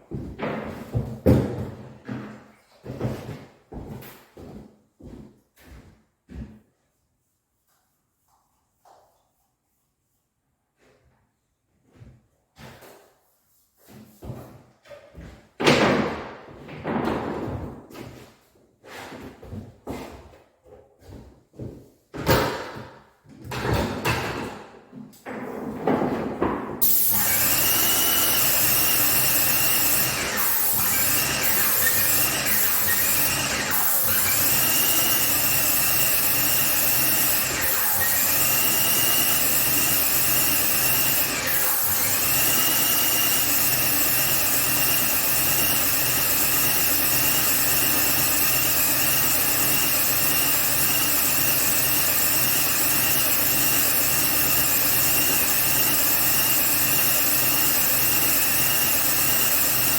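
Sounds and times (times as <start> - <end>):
paint sprayer whine and hiss: 26.8 - 59.9.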